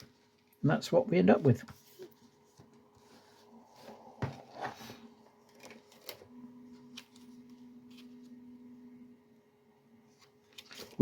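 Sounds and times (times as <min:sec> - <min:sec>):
faint steady hum: 0:00.0 - 0:11.0
magazine pages rustling: 0:01.3 - 0:08.6, 0:10.1 - 0:11.0.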